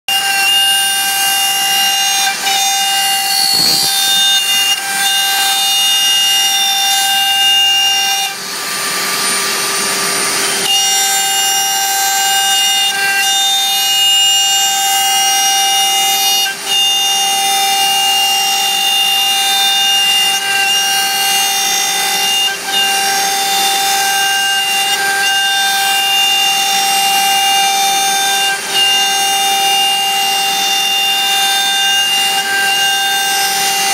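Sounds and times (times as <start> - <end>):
router spindle whining: 0.1 - 33.9.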